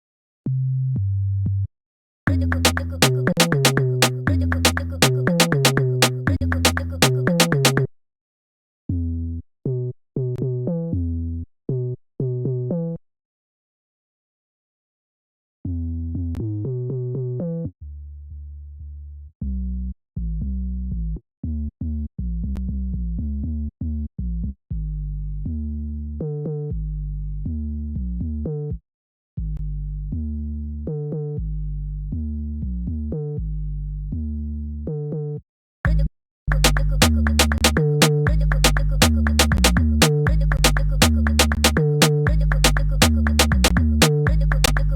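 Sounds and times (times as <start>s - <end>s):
drum machine beat: 2.3s - 7.9s, 35.9s - 44.9s
synth bass line: 36.5s - 44.9s.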